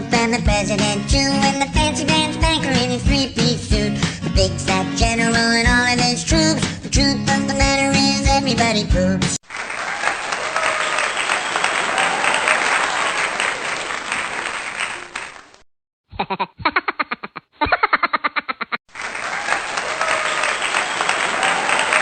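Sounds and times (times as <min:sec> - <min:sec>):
crowd applauding and cheering: 0:09.4 - 0:15.6, 0:18.9 - 0:22.0.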